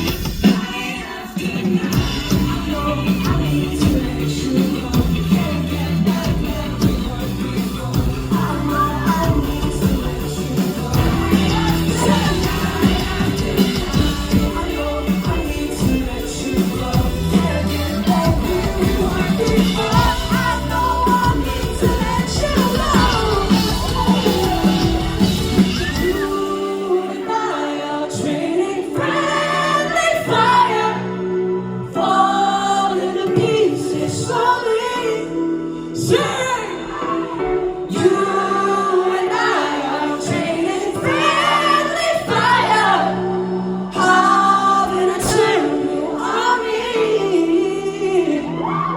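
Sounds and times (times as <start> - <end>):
person singing: 0.0 - 48.9
deep bass and drums: 2.0 - 26.3.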